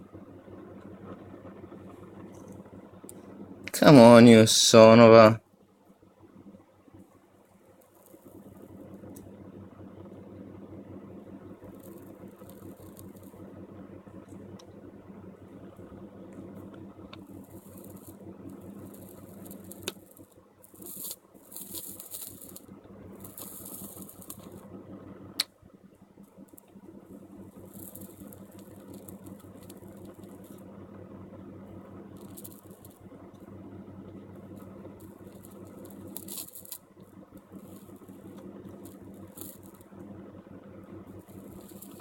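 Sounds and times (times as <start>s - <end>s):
small fan humming: 0.0s - 42.0s
metal tools scratching circuit board: 20.8s - 22.6s.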